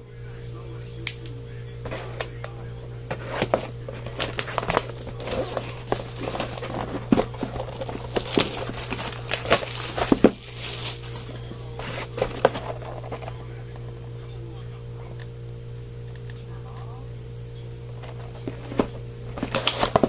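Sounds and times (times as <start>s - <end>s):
steady low hum: 0.0s - 20.0s
card wrapper crinkling: 1.8s - 2.5s, 3.1s - 14.1s, 17.9s - 20.0s.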